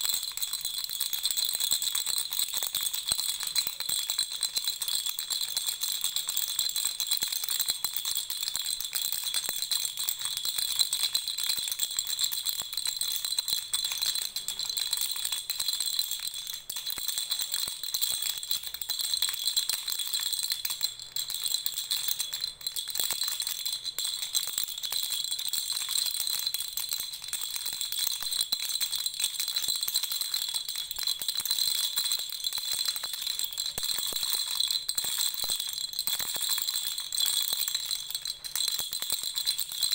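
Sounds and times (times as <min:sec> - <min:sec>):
baby rattle shaking: 0:00.0 - 0:01.6, 0:10.2 - 0:39.9.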